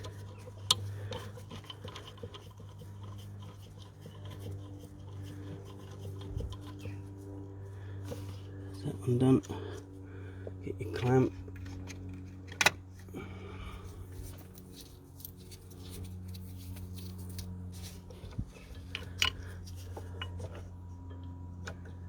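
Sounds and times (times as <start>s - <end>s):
steady low hum: 0.0s - 22.0s
metallic clicks of clamp and bolt: 18.8s - 19.6s.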